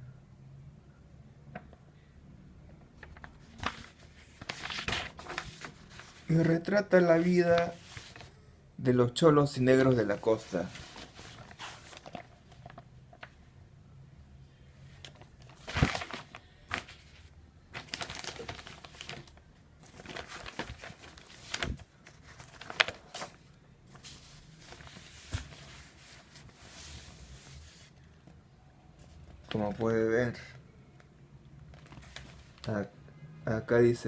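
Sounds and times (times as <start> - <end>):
newspaper pages rustling: 3.0 - 8.3, 9.7 - 13.4, 15.0 - 28.1, 31.7 - 32.7.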